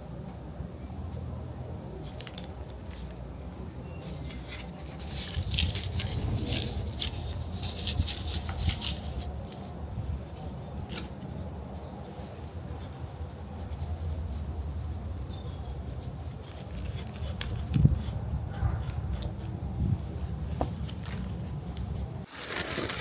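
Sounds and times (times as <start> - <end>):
crackling rustling handling: 4.0 - 9.8, 20.0 - 23.0
steady low hum: 5.3 - 10.3.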